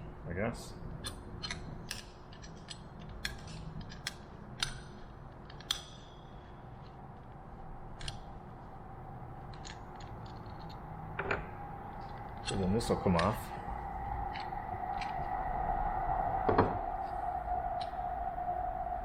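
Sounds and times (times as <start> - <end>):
small metal parts clicking: 1.0 - 7.3, 9.4 - 13.4.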